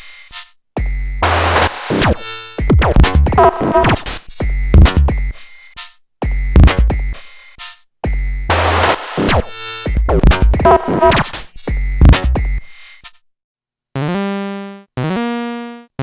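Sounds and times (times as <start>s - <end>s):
electronic drum hits: 1.2s - 4.0s, 8.5s - 11.4s.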